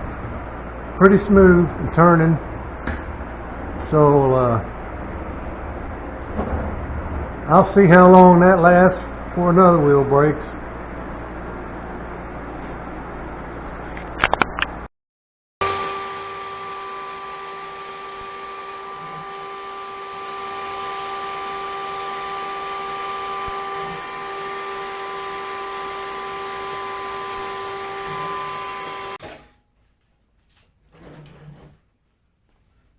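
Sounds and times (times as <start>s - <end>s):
shop vac motor whining: 15.6s - 29.5s.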